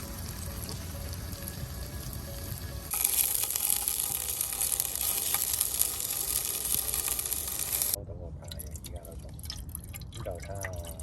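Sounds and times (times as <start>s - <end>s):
food sizzling in a hot pan: 0.0s - 8.0s.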